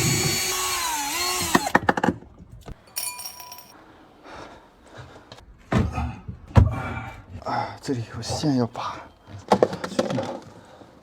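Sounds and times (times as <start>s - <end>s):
electric screwdriver whining: 0.0s - 1.8s.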